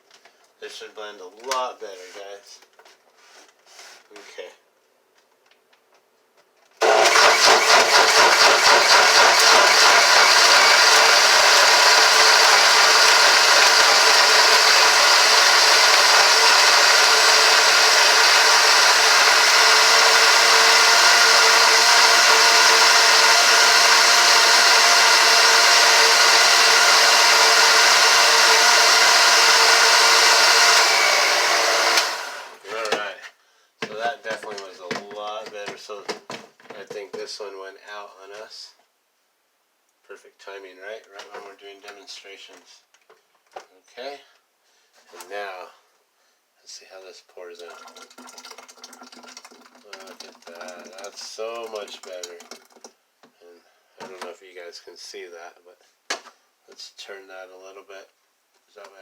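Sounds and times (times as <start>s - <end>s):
blender motor chopping: 6.8s - 33.0s, 47.7s - 52.8s.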